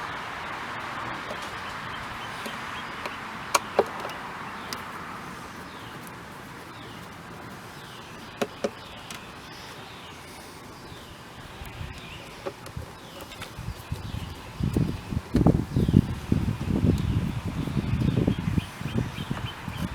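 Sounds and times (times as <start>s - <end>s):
sharp metallic clicks: 1.2s - 4.9s.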